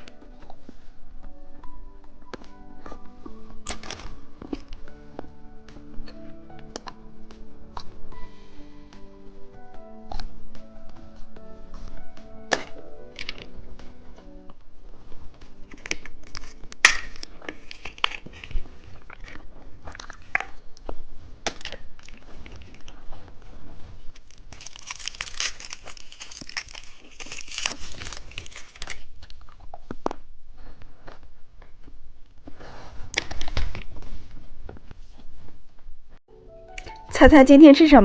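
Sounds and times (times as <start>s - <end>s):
plastic wrapper crinkling: 15.5s - 30.2s.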